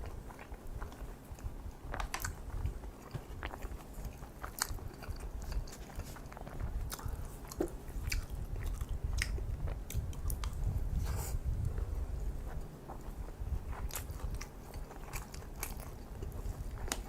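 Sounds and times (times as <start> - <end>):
chewing food: 0.0 - 17.0.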